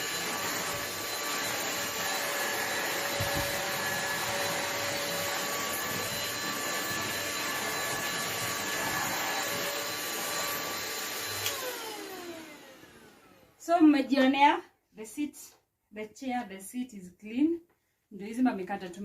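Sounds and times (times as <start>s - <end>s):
vacuum cleaner running: 0.0s - 13.6s.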